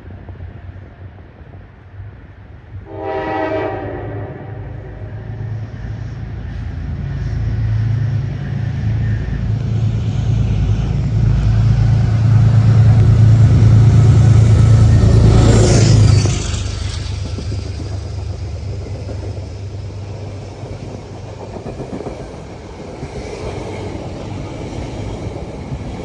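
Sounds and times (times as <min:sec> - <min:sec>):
train rumbling: 0:00.0 - 0:26.0
train horn blast: 0:02.8 - 0:05.5.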